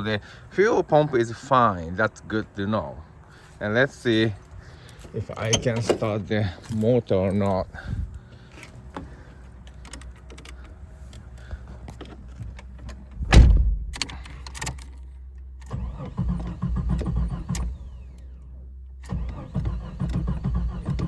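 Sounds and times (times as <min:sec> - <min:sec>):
loud thump: 0:13.2 - 0:14.0
starter cranking engine: 0:15.6 - 0:18.4, 0:19.0 - 0:21.0.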